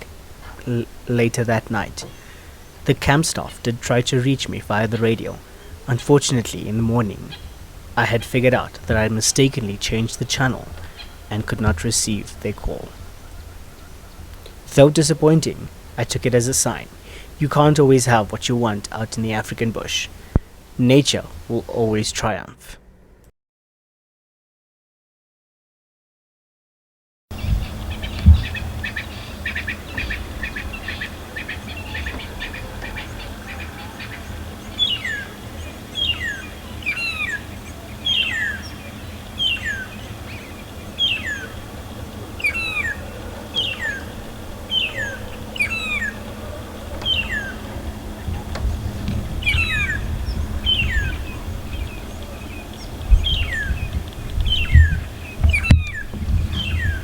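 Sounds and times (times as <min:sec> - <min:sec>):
birds high chattering notes: 0:00.0 - 0:22.7, 0:27.3 - 0:57.0
low rumble: 0:27.3 - 0:57.0.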